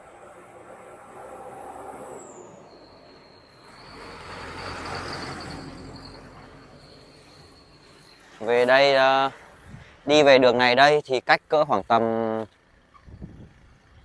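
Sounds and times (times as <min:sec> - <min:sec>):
vehicle passing: 0:00.0 - 0:10.1.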